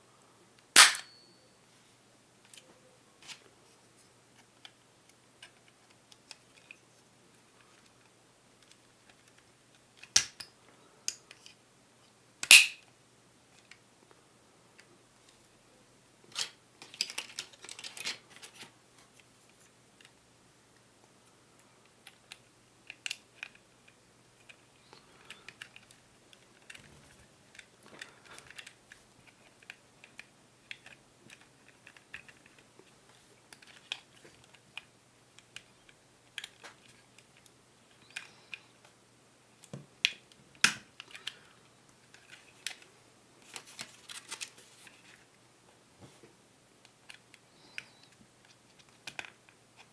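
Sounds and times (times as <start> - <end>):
small parts clicking and rattling: 16.3 - 18.7, 21.8 - 38.8, 46.8 - 49.9.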